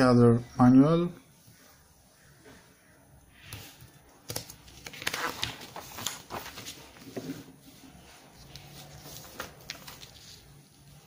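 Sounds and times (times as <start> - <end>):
paper rustling: 3.5 - 11.0.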